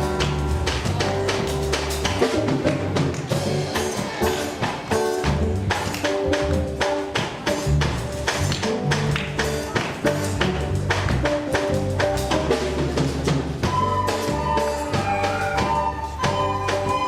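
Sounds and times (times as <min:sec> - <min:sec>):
held bass notes: 0:00.0 - 0:17.0
fast percussion taps: 0:04.0 - 0:12.5.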